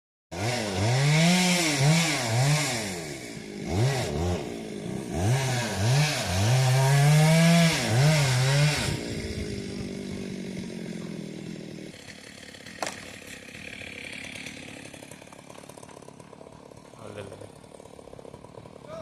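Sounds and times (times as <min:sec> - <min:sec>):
chainsaw engine revving: 0:00.3 - 0:19.0.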